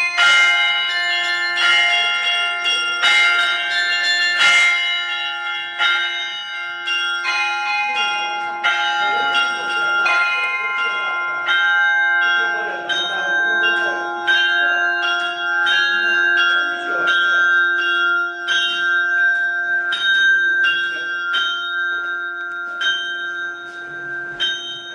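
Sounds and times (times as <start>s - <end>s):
church bells ringing: 0.0s - 24.9s
low bell humming: 0.0s - 24.9s.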